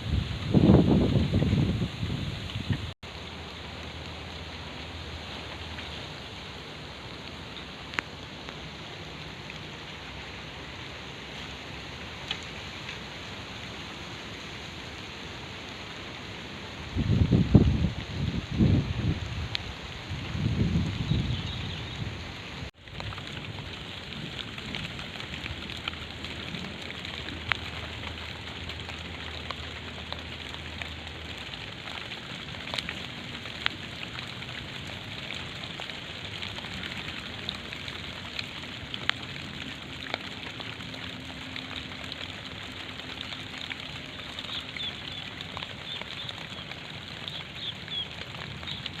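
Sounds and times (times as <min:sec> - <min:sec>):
rain hissing: 0:00.0 - 0:49.0
sharp raindrop ticks: 0:02.4 - 0:10.3, 0:12.2 - 0:13.8, 0:22.7 - 0:49.0.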